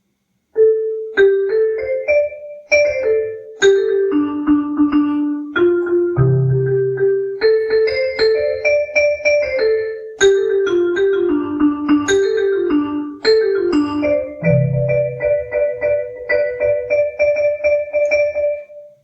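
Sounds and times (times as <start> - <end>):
electronic keyboard melody: 0.6 - 19.0
low bass note: 14.4 - 15.2.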